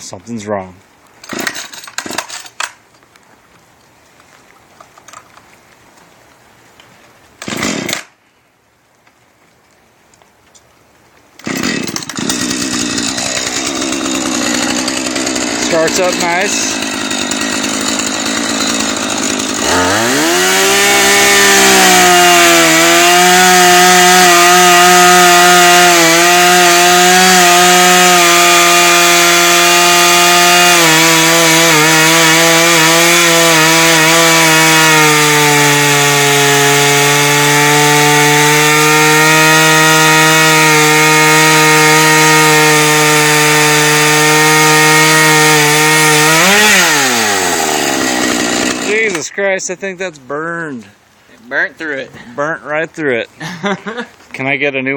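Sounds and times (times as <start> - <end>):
chainsaw cutting wood: 1.2 - 2.8, 7.4 - 8.2, 11.4 - 49.3.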